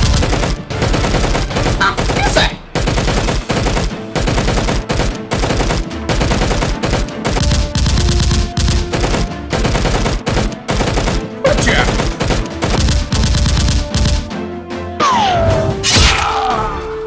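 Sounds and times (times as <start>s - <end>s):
automatic gunfire bursts: 0.0s - 14.3s.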